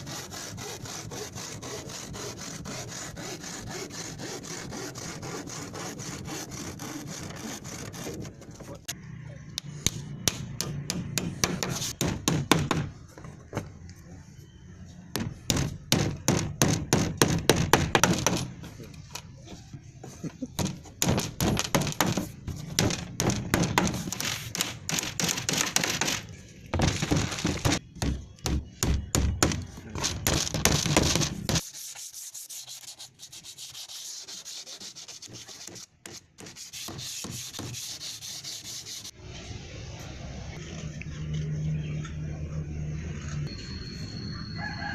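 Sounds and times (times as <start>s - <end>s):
wood sanded by hand: 0.0s - 8.5s, 31.5s - 39.1s.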